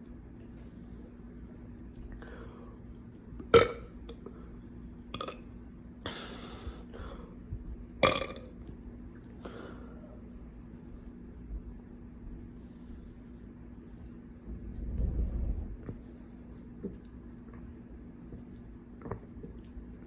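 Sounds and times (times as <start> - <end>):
person burping: 3.5 - 4.2, 8.0 - 8.5.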